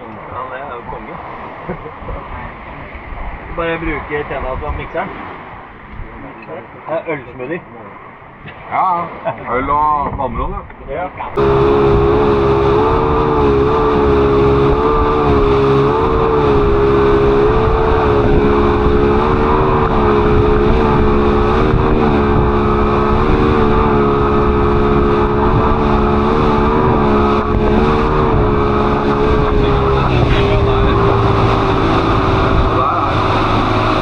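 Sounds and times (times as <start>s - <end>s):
speedboat engine running: 11.2s - 34.0s.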